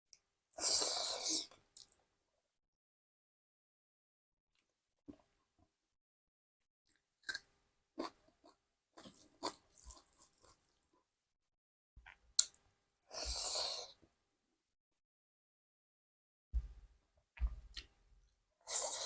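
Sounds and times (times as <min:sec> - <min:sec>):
chewing with crunches: 0:08.0 - 0:10.8.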